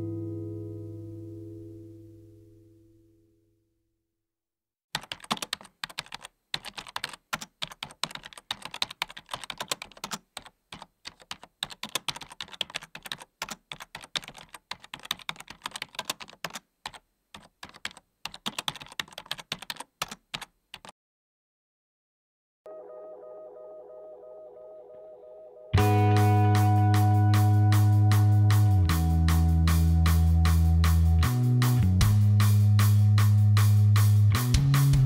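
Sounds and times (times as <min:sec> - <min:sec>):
computer keyboard typing: 0:04.9 - 0:21.0.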